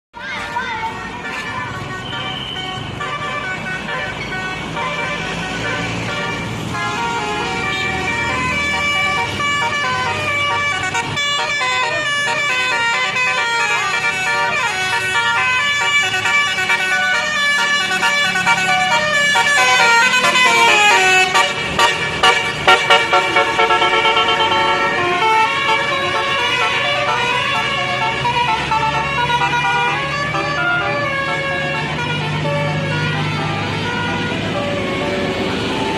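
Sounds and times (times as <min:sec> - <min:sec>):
musical air horn tune: 0:01.0 - 0:35.9.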